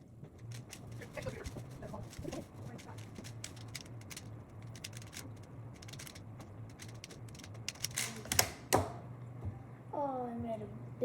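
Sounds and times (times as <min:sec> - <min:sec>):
puzzle cube plastic clicks: 0:00.4 - 0:09.0.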